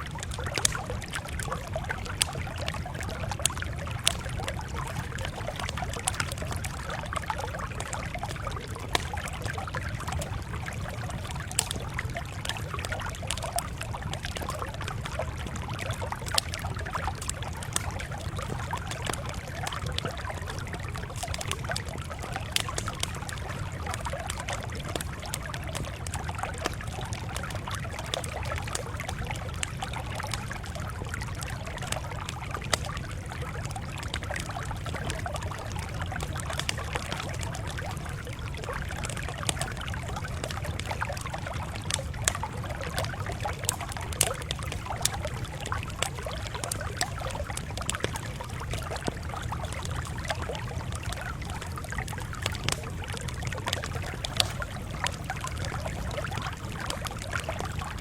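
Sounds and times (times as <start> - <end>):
burning wood popping: 0.0 - 58.0
campfire crackling: 0.0 - 58.0.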